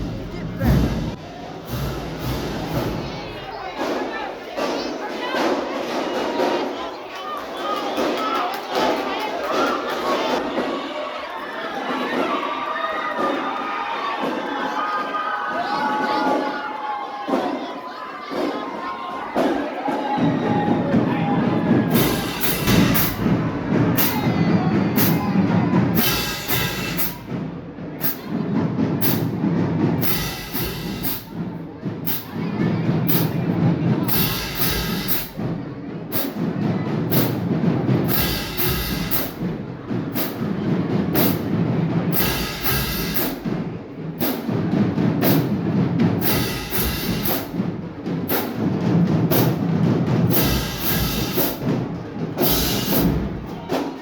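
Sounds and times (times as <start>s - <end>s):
marching band drums: 0.0s - 7.0s, 11.8s - 54.0s
horn phrases: 19.4s - 35.6s.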